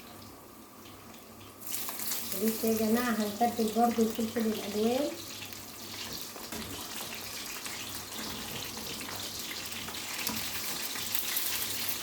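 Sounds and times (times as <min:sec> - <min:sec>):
food sizzling in oil: 0:00.0 - 0:12.0.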